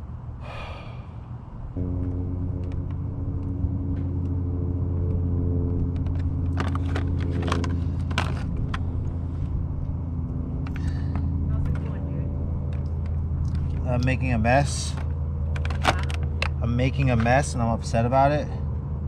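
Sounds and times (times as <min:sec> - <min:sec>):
vehicle engine hum: 0:00.0 - 0:19.0
clicks and rustling handling: 0:05.9 - 0:08.9, 0:14.8 - 0:17.4.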